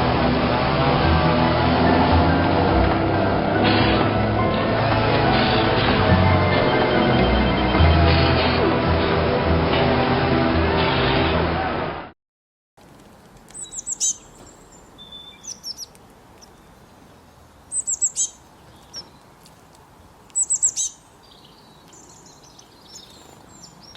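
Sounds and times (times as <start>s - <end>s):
soft bird chirps: 13.5s - 23.9s
songbird singing: 13.5s - 23.9s.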